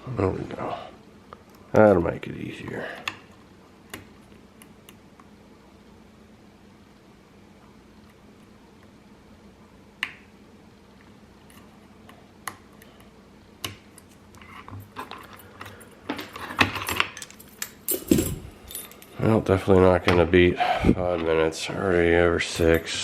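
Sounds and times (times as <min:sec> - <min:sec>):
metallic rattling: 0:16.3 - 0:19.2.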